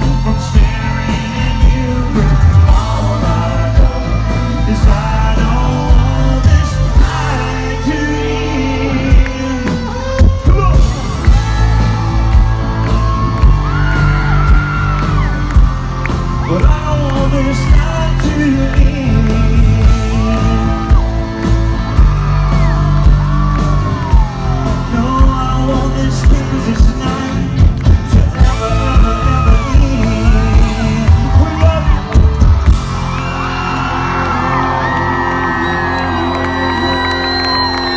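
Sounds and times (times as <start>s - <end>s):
crowd cheering: 0.0s - 37.9s
live country band playing: 0.0s - 37.9s.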